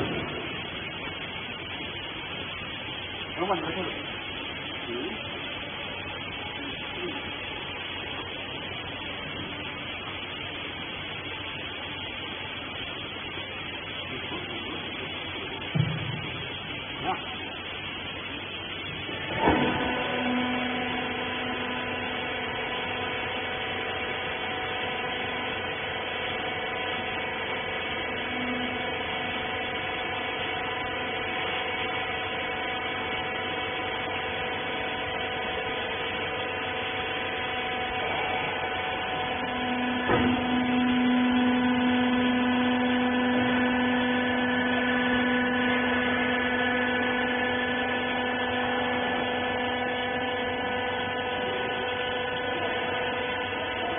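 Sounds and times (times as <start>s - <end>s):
hydraulic pump motor whining: 18.9s - 53.9s.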